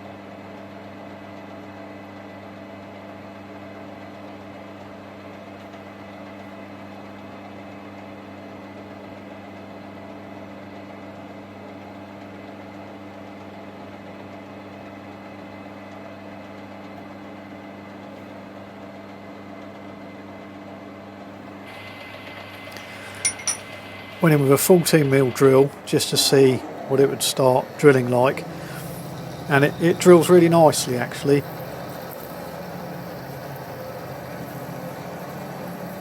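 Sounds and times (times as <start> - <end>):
metal lathe running: 21.7 - 36.0.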